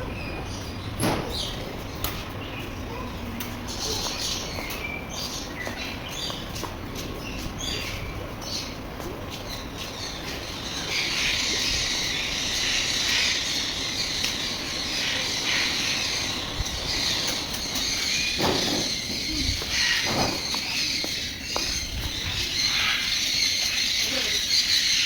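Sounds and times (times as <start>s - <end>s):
birds squawking and chattering: 0.0s - 25.0s.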